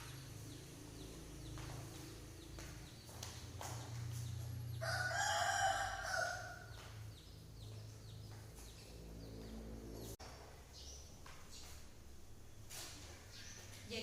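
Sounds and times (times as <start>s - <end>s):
rooster crowing: 4.7s - 6.8s.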